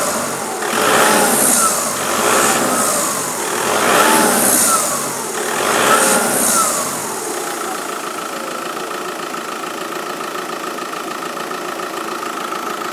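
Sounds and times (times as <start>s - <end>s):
high-pitched whine: 0.0s - 7.9s
car engine revving and idling: 0.0s - 12.9s.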